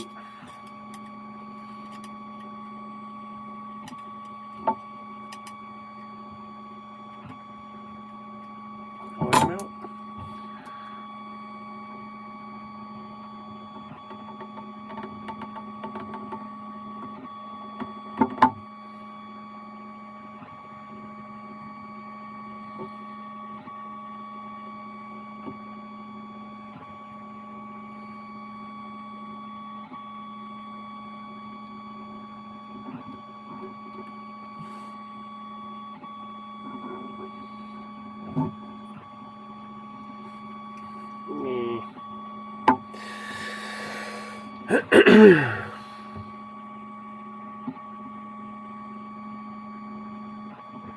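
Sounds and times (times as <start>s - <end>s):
steady machine hum: 0.0s - 50.9s.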